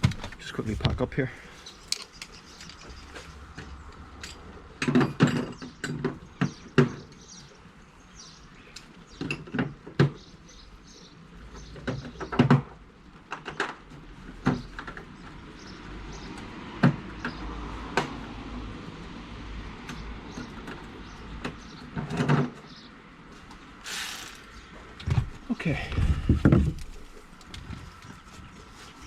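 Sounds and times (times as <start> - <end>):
tools knocking and clattering: 1.8 - 7.0.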